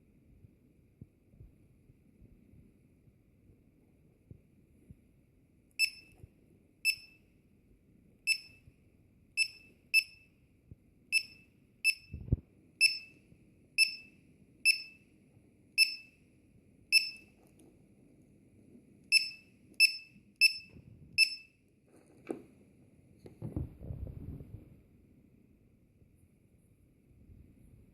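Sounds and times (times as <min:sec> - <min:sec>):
alarm buzzer beeping: 0:12.8 - 0:13.2, 0:13.8 - 0:15.0, 0:15.8 - 0:16.2, 0:16.9 - 0:17.3, 0:19.1 - 0:21.5.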